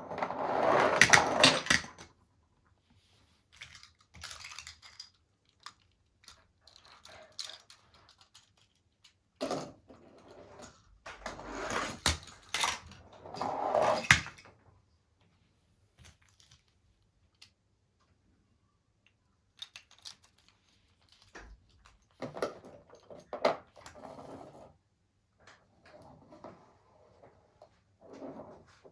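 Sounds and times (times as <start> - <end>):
plastic toy vehicles rattling: 0.9 - 2.1, 3.5 - 9.4, 19.5 - 24.0.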